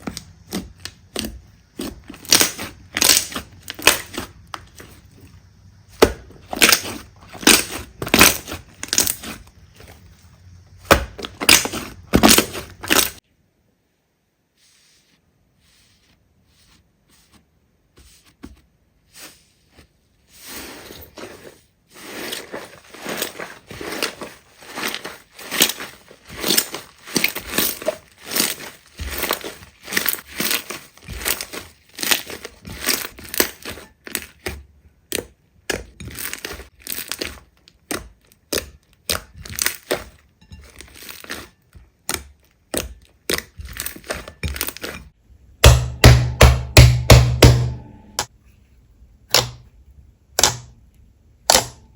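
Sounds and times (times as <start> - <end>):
slime crackling and popping: 0.2 - 4.4, 6.5 - 9.4, 23.0 - 34.5, 36.1 - 40.1.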